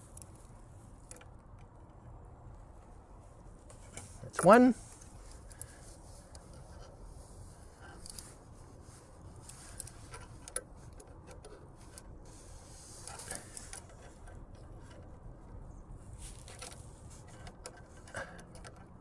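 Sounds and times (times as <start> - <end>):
small wrench clicking and scraping: 7.8 - 8.4, 9.4 - 15.2, 16.2 - 19.0.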